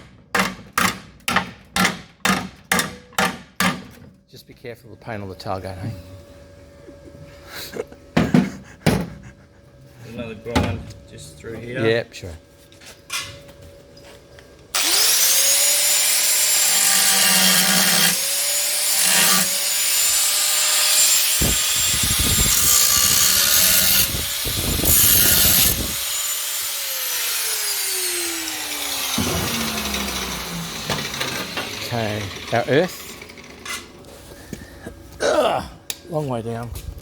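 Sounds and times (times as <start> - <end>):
angle grinder grinding steel: 14.8 - 33.9.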